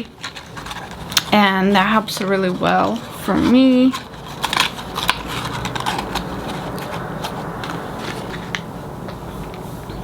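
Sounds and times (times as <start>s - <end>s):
medicine packages clicking and rustling: 0.0s - 8.7s.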